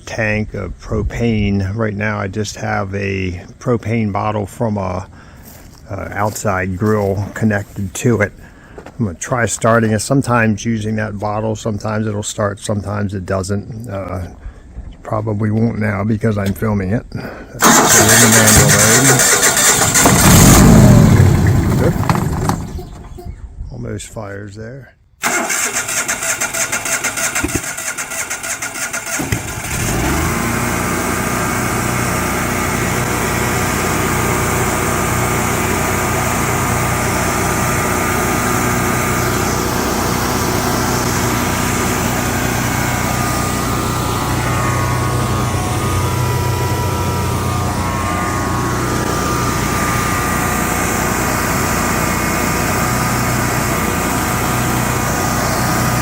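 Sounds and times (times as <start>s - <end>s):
generator engine running: 17.6s - 23.3s, 25.2s - 56.0s
generator engine cranking: 17.6s - 23.4s, 25.2s - 56.0s.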